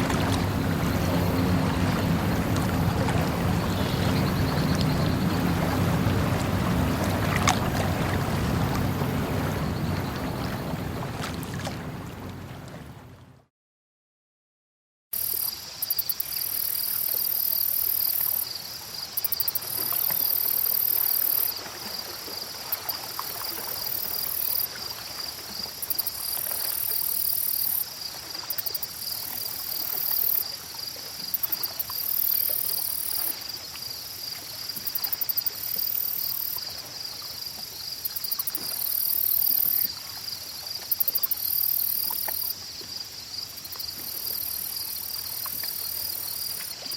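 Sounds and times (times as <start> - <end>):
insects trilling: 0.0 - 10.7, 15.2 - 46.9
water sound: 0.0 - 13.4.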